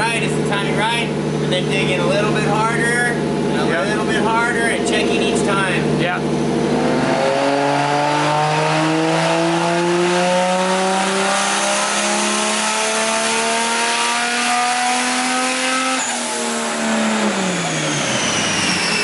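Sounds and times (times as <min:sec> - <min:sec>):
car engine revving on a dyno: 0:00.0 - 0:19.0.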